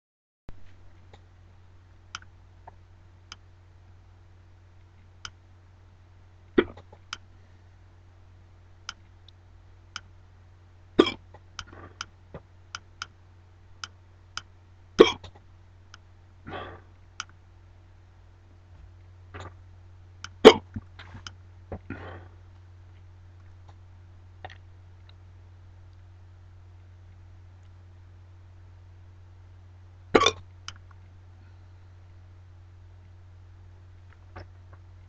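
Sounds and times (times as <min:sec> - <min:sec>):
steady low hum: 0:00.5 - 0:35.0
person hiccupping: 0:06.6 - 0:06.9, 0:11.0 - 0:12.0, 0:15.0 - 0:15.4, 0:20.4 - 0:20.8, 0:30.2 - 0:30.4
soft breath: 0:31.3 - 0:32.2.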